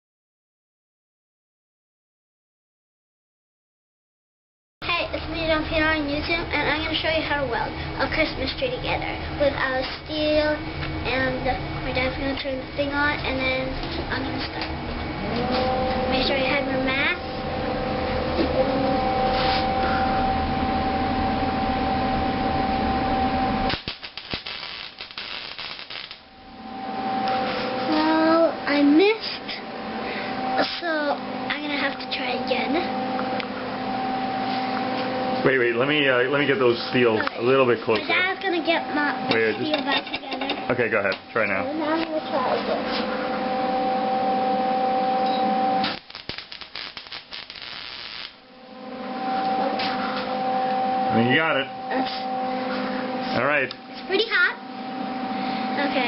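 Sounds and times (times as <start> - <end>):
two-tone machine hum: 4.8 - 56.0
welding arc crackling: 23.6 - 26.4, 45.8 - 48.5.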